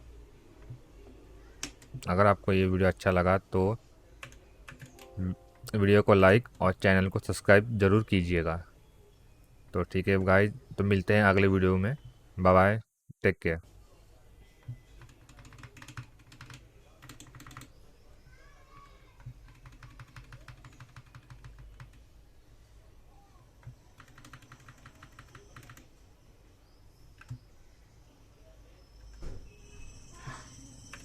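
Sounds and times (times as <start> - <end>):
fast typing on keyboard: 4.2 - 5.1, 15.0 - 17.8, 19.2 - 22.0, 23.6 - 25.9, 27.2 - 27.4.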